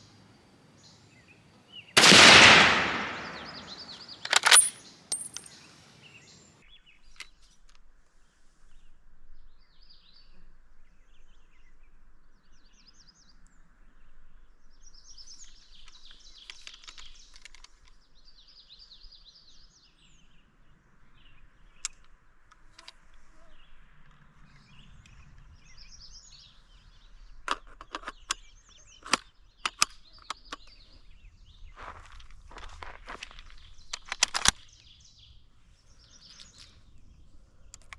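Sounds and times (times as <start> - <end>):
songbirds chirping: 0.0 - 6.6, 33.3 - 37.9
sharp clicks and knocks: 2.0 - 5.5.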